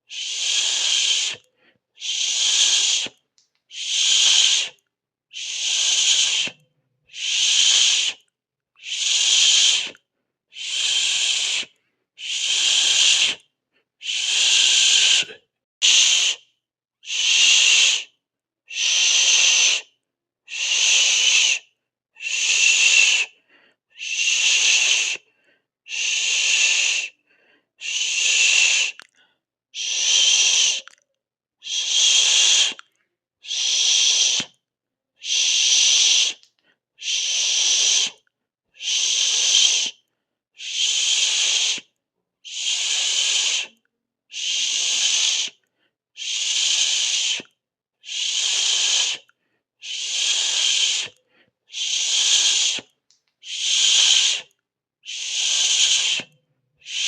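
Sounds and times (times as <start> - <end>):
hissing bursts: 50.0 - 51.1.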